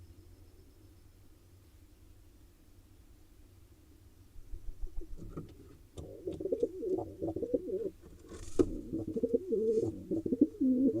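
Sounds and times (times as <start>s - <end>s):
rustle and click: 4.8s - 7.0s, 8.0s - 10.4s
pigeon cooing: 6.0s - 8.0s, 8.7s - 11.0s.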